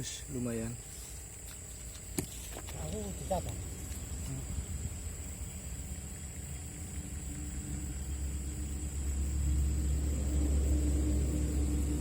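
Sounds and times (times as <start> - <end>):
vehicle engine passing: 3.1 - 12.0.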